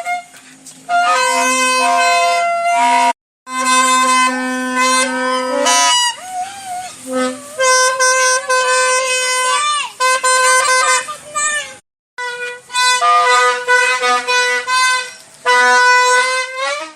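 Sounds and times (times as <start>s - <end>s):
toy trumpets blowing buzzy blasts: 0.0s - 11.6s, 12.2s - 16.9s.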